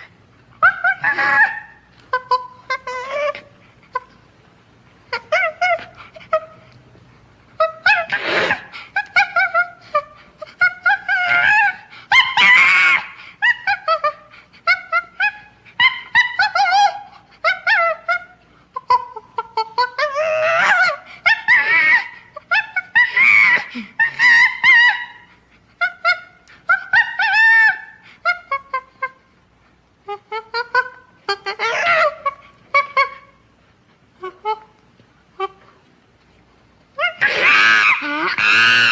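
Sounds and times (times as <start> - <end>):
chimpanzee screeches and hoots: 0.0 - 4.1, 7.6 - 29.2, 30.5 - 33.4, 37.0 - 38.9.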